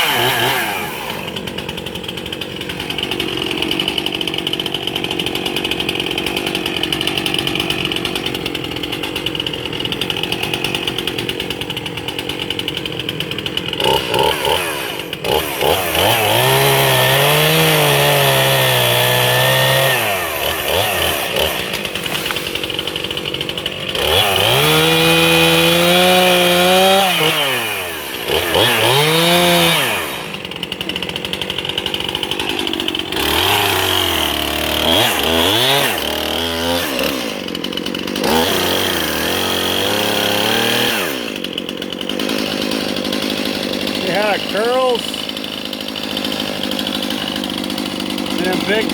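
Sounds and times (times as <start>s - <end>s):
chainsaw cutting log: 0.0s - 48.9s.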